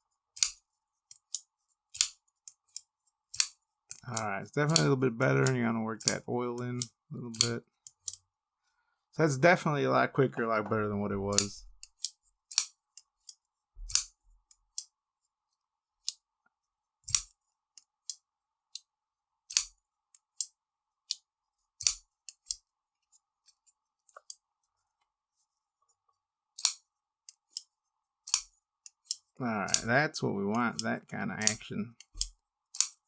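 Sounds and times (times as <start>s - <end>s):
folding knife clicking open and closed: 0.4s - 0.6s, 2.0s - 4.0s, 11.3s - 14.2s, 17.1s - 17.3s, 19.5s - 19.7s, 21.8s - 22.6s, 26.6s - 27.7s, 28.3s - 29.9s, 31.5s - 33.0s.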